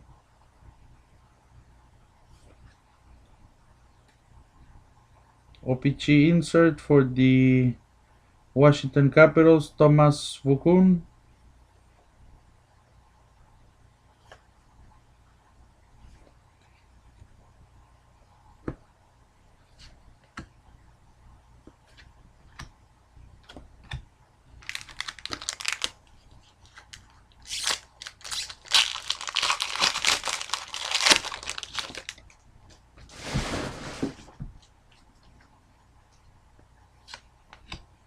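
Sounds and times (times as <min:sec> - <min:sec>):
card pack wrapper tearing and crinkling: 0:24.6 - 0:32.2
cards clicking and tapping: 0:37.0 - 0:37.9.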